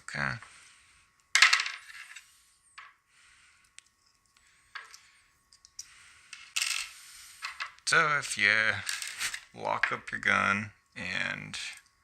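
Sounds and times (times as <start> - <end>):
metal parts rattling: 6.3 - 9.5.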